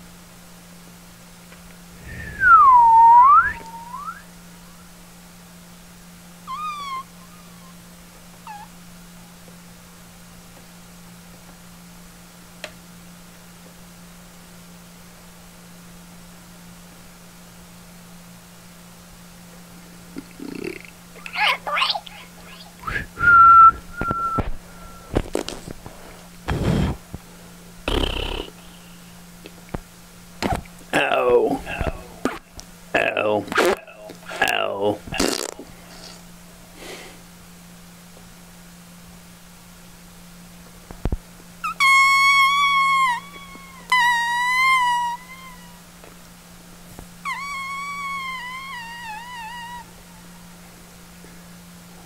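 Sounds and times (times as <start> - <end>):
breathy blown bursts: 2.0 - 4.1
person whistling high note: 2.2 - 4.3, 22.8 - 25.1
cat meowing: 6.5 - 7.1, 47.2 - 49.9
squeaky mouth sounds: 6.5 - 7.8, 20.1 - 23.2, 35.2 - 35.6, 41.6 - 45.7, 47.2 - 49.9.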